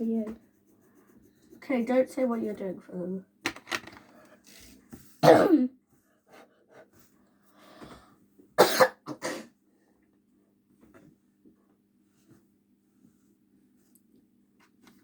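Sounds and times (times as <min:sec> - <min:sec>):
person coughing: 0:05.2 - 0:05.8, 0:08.6 - 0:09.5.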